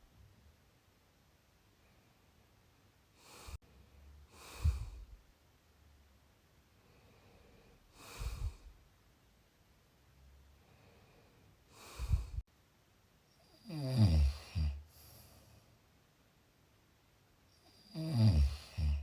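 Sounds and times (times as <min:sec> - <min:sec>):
person snoring: 0:03.2 - 0:03.6, 0:04.3 - 0:05.0, 0:08.0 - 0:08.7, 0:11.7 - 0:12.4, 0:13.6 - 0:15.3, 0:17.8 - 0:19.0.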